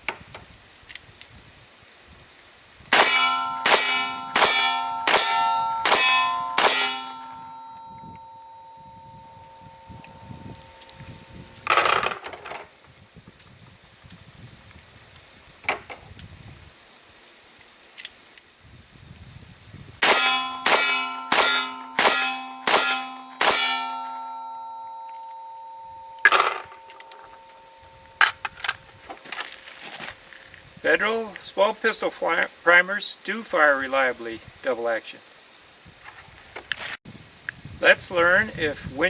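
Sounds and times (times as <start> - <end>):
sharp metallic clicks: 2.8 - 8.9, 10.0 - 11.8, 19.9 - 24.3
revolver shots ringing: 3.0 - 10.9, 20.0 - 28.2.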